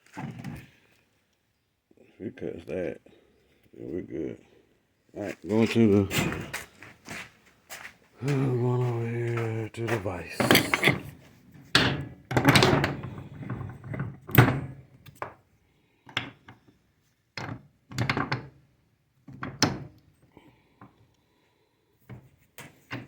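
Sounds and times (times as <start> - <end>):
scrap metal clanking in a vise: 10.3 - 11.2.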